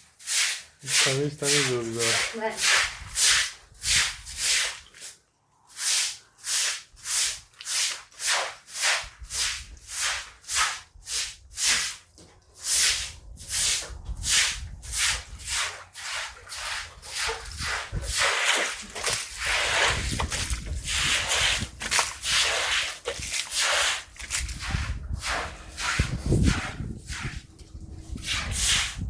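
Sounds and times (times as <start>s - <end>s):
cloth scrubbing a surface: 0.2s - 4.8s, 12.6s - 29.0s.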